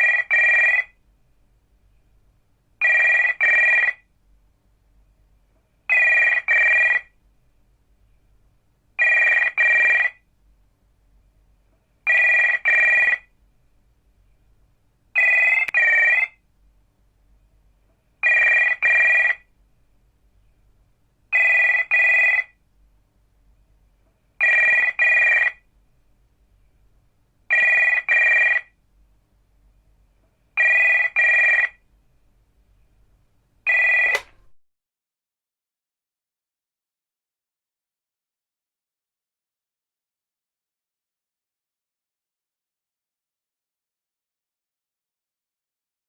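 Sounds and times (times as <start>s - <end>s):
telephone ringing: 0.0s - 1.0s, 2.8s - 4.1s, 5.9s - 7.2s, 9.0s - 10.2s, 12.1s - 13.3s, 15.2s - 16.4s, 18.2s - 19.5s, 21.3s - 22.6s, 24.4s - 25.6s, 27.5s - 28.8s, 30.6s - 31.8s, 33.6s - 34.5s.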